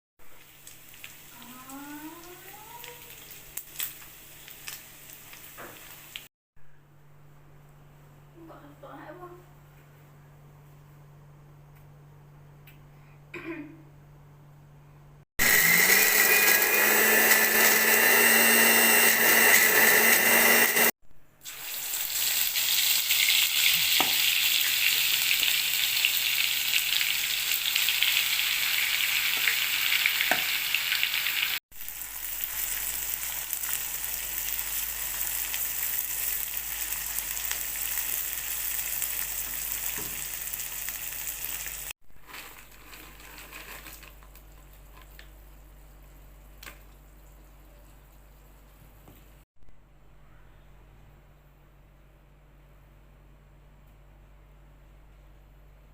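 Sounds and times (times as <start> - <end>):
food sizzling in hot oil: 0.3 - 6.3, 15.4 - 42.0.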